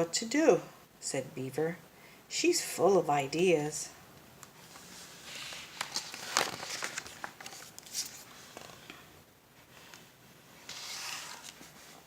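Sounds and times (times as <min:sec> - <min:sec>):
paper page rustling: 0:04.6 - 0:08.9, 0:10.6 - 0:12.0.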